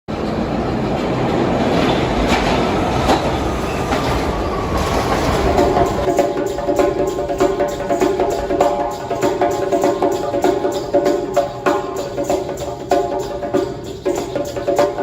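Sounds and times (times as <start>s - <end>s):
subway train rumble: 0.1s - 15.0s
wheel squeal: 1.2s - 12.8s
music: 5.5s - 15.0s.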